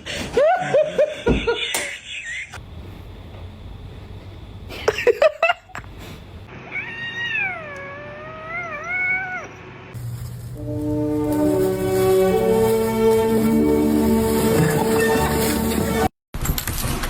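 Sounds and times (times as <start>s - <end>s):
cat meowing: 6.6s - 9.6s.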